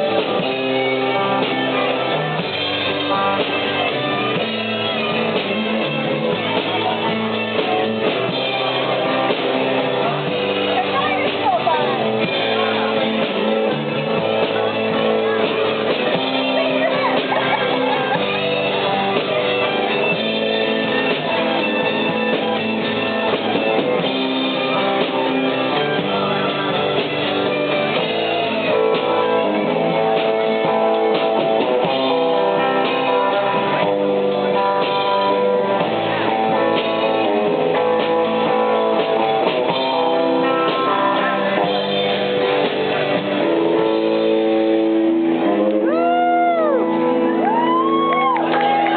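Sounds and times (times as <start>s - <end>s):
live band led by guitar: 0.0s - 48.9s.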